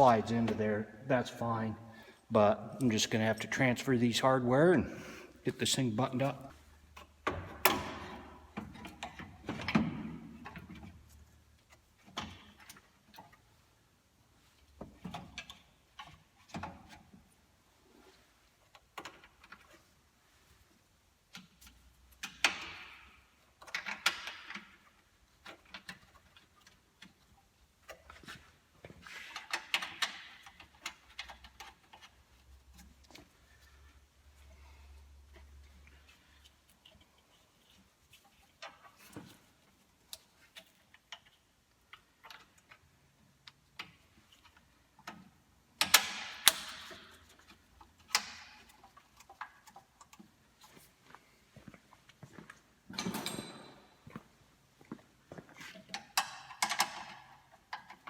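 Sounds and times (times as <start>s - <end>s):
clicks of metal hardware and tools: 40.1s - 50.3s, 52.9s - 54.2s, 55.7s - 58.0s.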